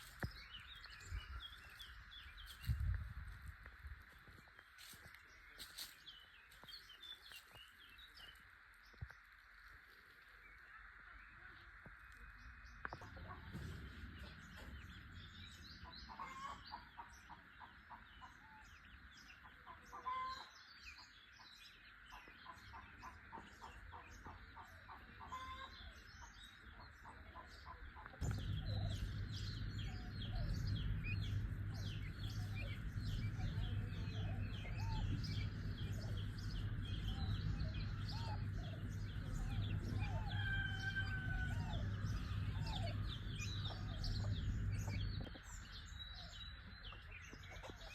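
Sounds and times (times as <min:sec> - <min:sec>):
small birds chirping: 0:00.0 - 0:47.9
chickens clucking: 0:12.8 - 0:18.7, 0:19.3 - 0:45.7
steady low hum: 0:21.1 - 0:47.9.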